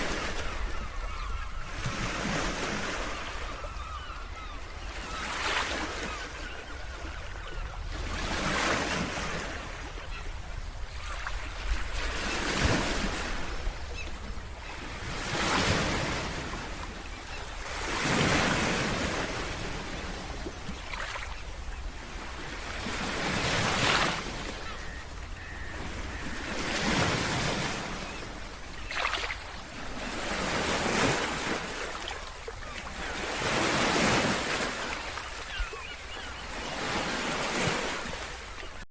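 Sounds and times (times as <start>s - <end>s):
ocean waves crashing on beach: 0.0s - 1.3s, 7.5s - 35.9s.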